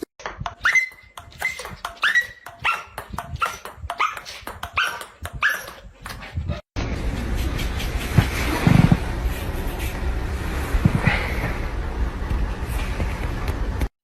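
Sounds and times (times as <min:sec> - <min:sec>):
dog yipping: 0:00.6 - 0:06.6.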